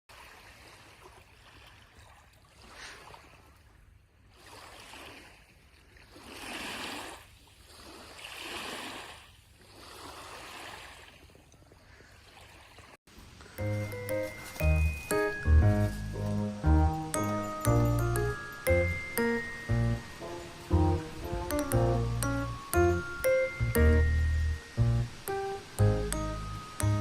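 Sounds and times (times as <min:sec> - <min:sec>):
small lake waves washing in: 0:00.1 - 0:13.0.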